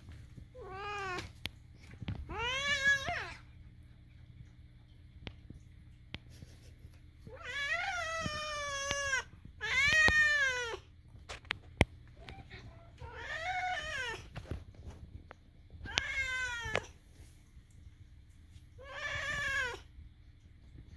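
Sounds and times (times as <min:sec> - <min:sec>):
cat meowing: 0:02.3 - 0:03.4, 0:07.3 - 0:10.8, 0:12.2 - 0:14.3, 0:15.8 - 0:16.9.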